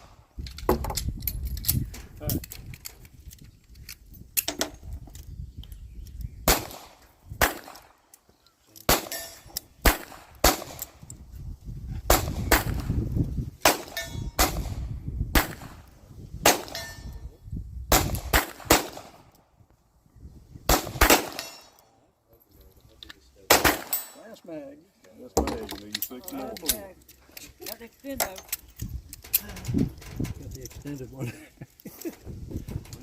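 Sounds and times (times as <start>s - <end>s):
handgun shots: 20.7s - 21.7s, 23.5s - 24.2s.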